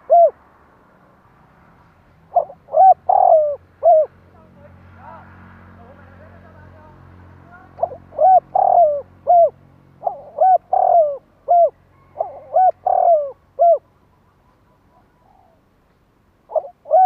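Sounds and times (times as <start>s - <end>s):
dove cooing: 0.0s - 0.4s, 2.3s - 4.2s, 7.8s - 15.7s, 16.5s - 17.0s.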